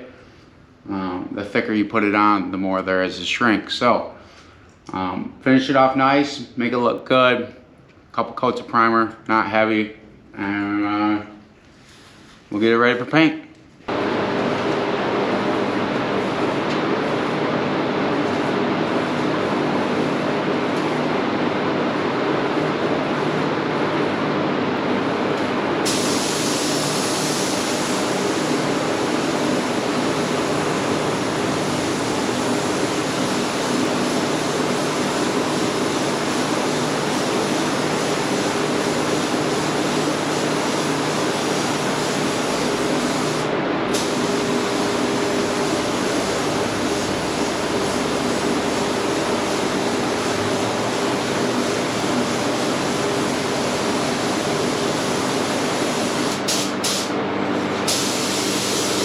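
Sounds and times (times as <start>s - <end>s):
paint spray gun hissing: 25.8s - 57.2s, 57.8s - 59.0s.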